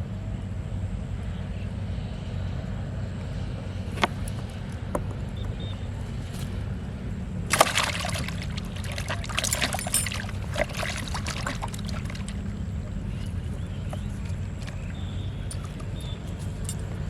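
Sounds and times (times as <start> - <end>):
steady low hum: 0.0 - 17.0
water splashing: 7.4 - 13.0.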